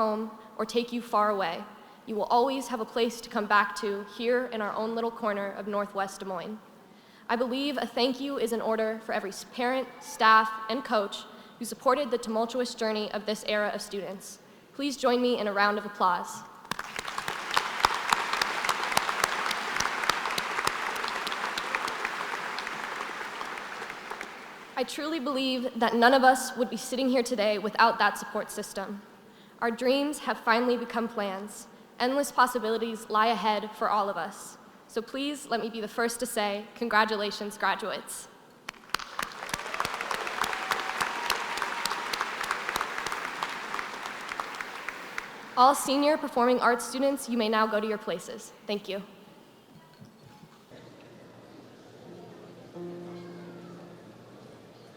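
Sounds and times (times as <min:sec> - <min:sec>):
audience applauding: 0:16.6 - 0:24.8, 0:38.7 - 0:45.6.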